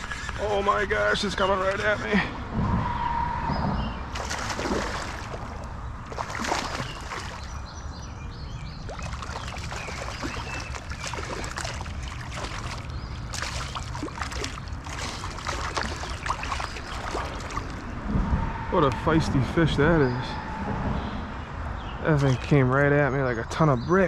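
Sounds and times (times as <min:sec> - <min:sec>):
water splashing: 0:04.1 - 0:07.6, 0:08.8 - 0:17.9
steady low rumble: 0:11.2 - 0:23.5.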